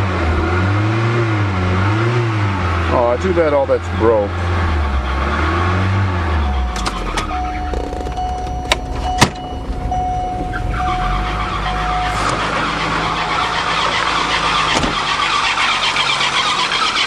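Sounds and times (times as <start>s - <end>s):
turbo engine running: 2.9s - 17.0s
electronic beep: 6.2s - 14.3s.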